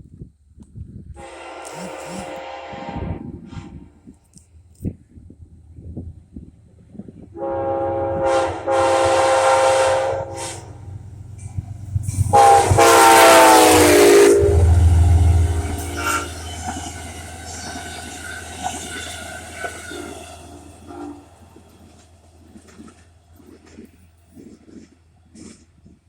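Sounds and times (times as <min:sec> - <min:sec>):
locomotive rumble: 0:01.0 - 0:26.0
train horn: 0:01.2 - 0:03.9, 0:07.4 - 0:21.6
wheels clicking over rail joints: 0:09.0 - 0:26.0.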